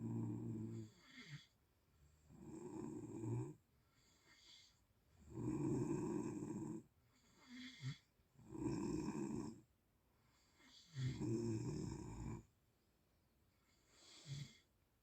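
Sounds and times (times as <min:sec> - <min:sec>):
person snoring: 0:00.0 - 0:01.5, 0:02.3 - 0:03.6, 0:04.2 - 0:06.8, 0:07.4 - 0:09.6, 0:10.6 - 0:12.5.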